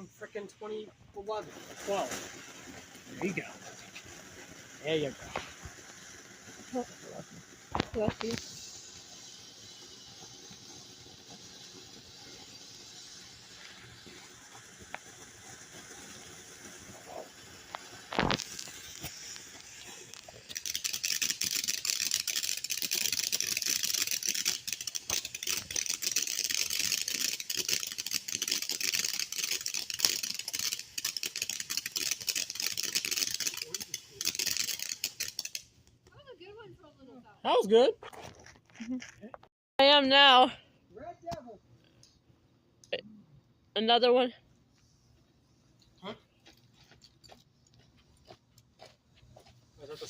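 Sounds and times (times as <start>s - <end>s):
ground firework hissing: 0.0s - 37.4s.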